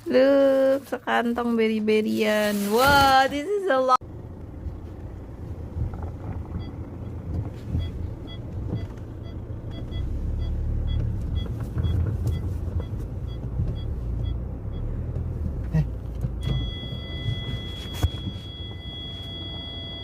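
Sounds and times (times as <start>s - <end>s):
wind rumble on microphone: 4.2s - 9.0s.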